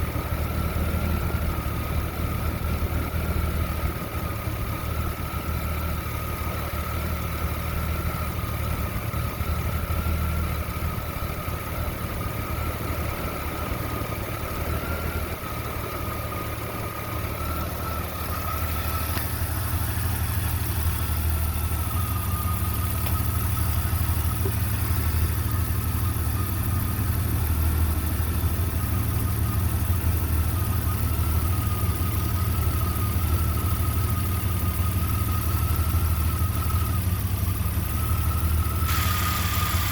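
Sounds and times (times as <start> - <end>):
engine idling roughly: 0.0 - 39.9
thin steady whine: 38.0 - 39.9.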